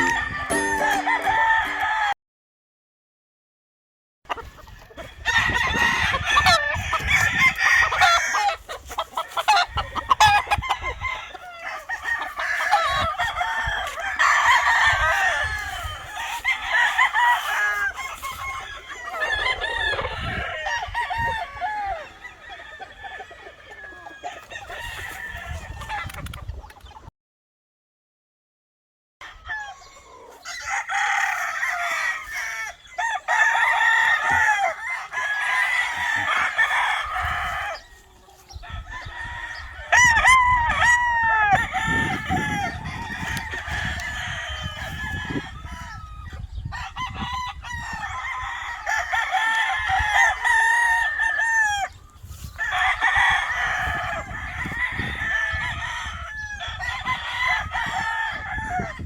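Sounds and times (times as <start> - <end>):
hens clucking: 0.0 - 1.8, 4.3 - 27.1, 29.8 - 40.2, 41.2 - 59.0
roosters crowing: 0.0 - 2.2, 4.4 - 26.3, 29.2 - 59.0.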